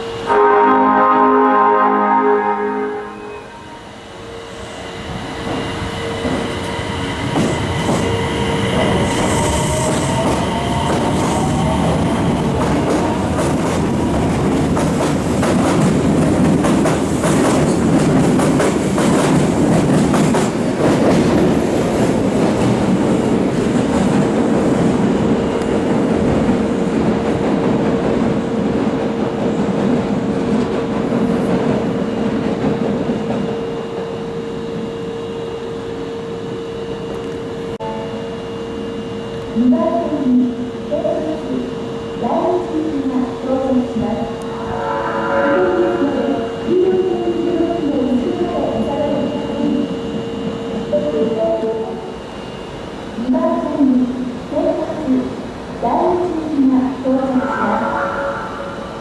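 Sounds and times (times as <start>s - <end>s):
train wheels clattering on track: 5.4s - 34.8s
steady tone: 44.0s - 48.0s, 57.0s - 59.0s.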